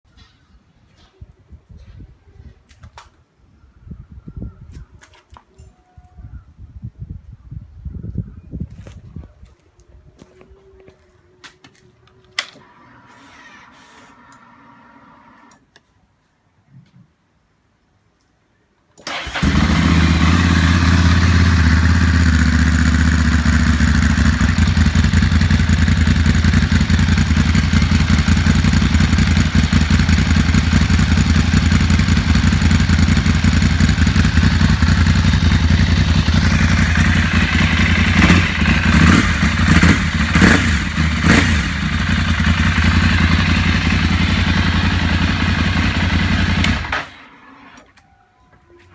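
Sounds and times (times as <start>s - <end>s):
motorcycle engine idling: 19.1s - 47.8s.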